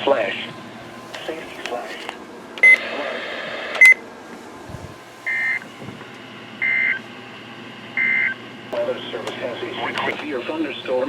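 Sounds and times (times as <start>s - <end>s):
long buzzy data burst: 5.2s - 5.6s.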